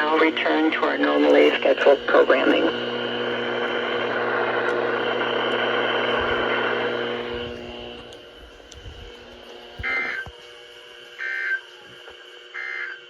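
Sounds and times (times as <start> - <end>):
radio static hiss with low hum: 0.0 - 13.0
high two-tone data burst: 12.6 - 13.0.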